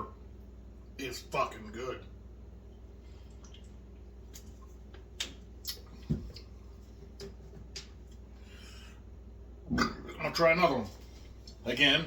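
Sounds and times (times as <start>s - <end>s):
steady low hum: 0.0s - 12.0s
wet lip smacks and chewing: 3.3s - 6.6s.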